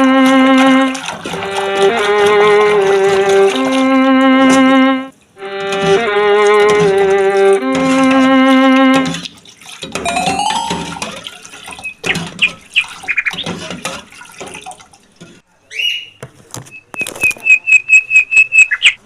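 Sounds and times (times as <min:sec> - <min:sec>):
clicks or taps: 0:05.6 - 0:08.2, 0:08.8 - 0:12.7
small birds chirping: 0:11.7 - 0:13.6, 0:15.7 - 0:19.0.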